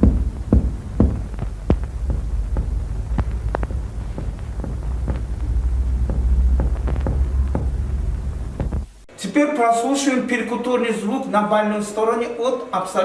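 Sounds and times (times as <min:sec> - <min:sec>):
finger taps on chest: 0:00.0 - 0:09.0
steady low hum: 0:00.0 - 0:09.1.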